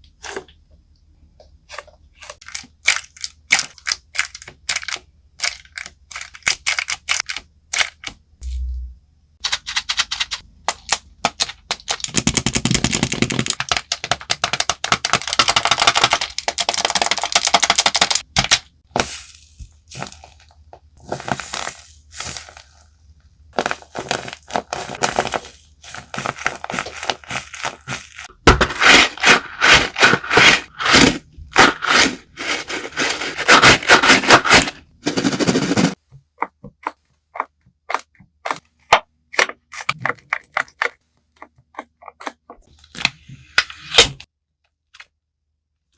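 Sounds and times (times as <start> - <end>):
fidget toys clicking and crackling: 2.4 - 8.2, 9.4 - 18.6.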